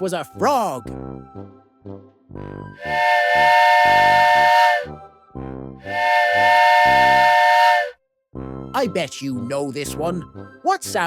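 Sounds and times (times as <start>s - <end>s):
train whistle blasts: 2.8s - 5.0s, 5.9s - 8.0s.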